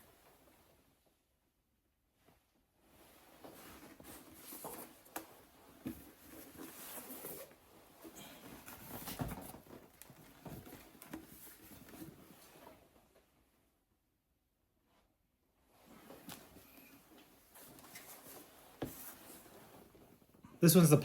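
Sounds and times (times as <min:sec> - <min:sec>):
toy shields rustling and scraping: 0:03.4 - 0:07.6, 0:17.2 - 0:20.1.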